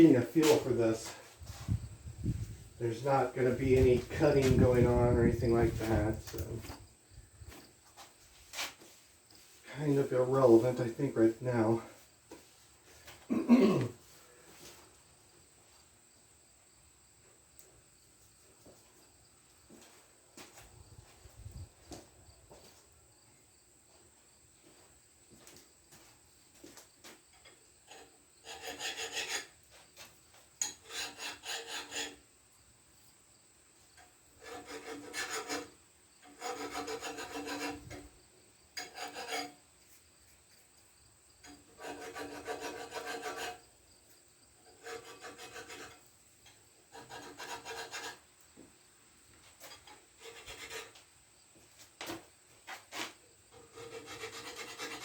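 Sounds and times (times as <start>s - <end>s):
file scraping metal: 27.9s - 32.2s, 34.4s - 38.1s, 38.8s - 39.6s, 41.4s - 43.7s, 44.6s - 48.3s, 49.6s - 51.0s, 52.7s - 55.0s.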